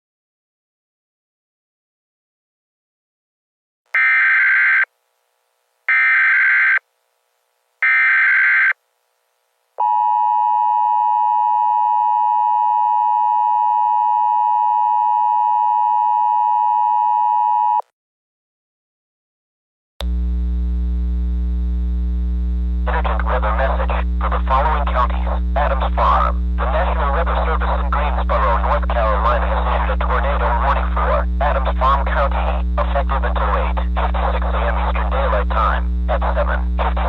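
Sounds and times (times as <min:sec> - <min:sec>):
digital data tone bursts: 0:04.0 - 0:04.9
low hum: 0:20.0 - 0:37.0.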